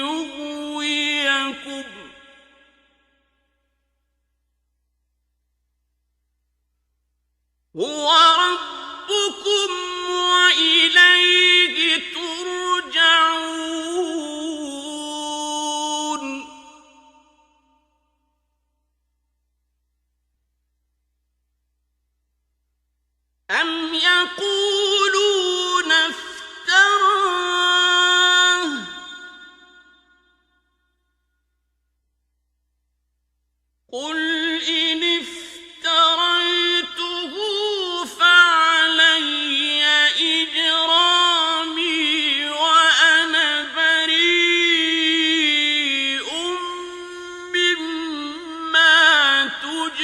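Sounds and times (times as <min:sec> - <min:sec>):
man chanting recitation: 0:00.0 - 0:02.2, 0:07.8 - 0:16.8, 0:34.0 - 0:50.0.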